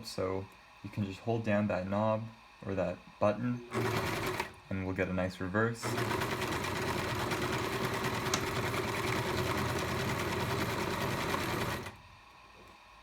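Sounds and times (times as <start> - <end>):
sewing machine stitching: 3.7 - 4.6, 5.8 - 12.0.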